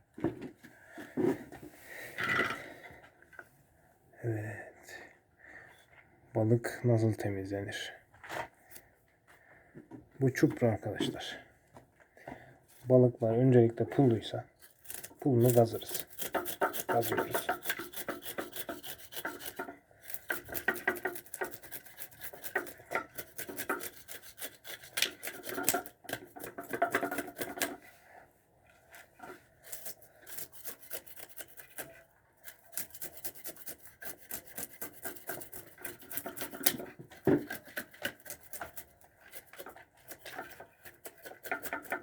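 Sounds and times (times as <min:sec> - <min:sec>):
knife scraping fish scales: 0:14.6 - 0:27.8, 0:29.6 - 0:42.0.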